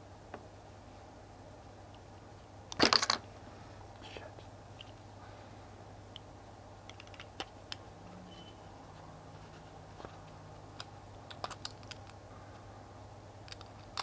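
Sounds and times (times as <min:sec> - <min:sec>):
faint low hum: 0:00.0 - 0:14.0
plastic capsules clicking: 0:06.9 - 0:07.8, 0:10.8 - 0:12.2, 0:13.4 - 0:14.0.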